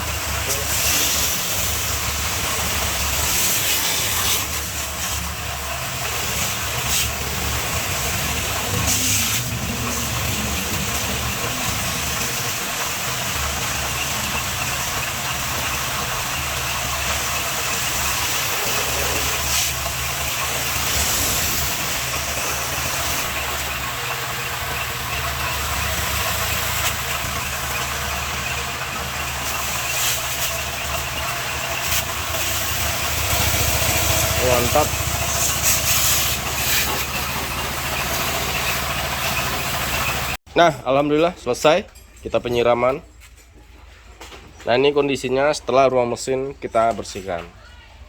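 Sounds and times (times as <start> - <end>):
high-pressure water spray hissing: 0.0 - 40.4
low motor hum: 0.0 - 40.4.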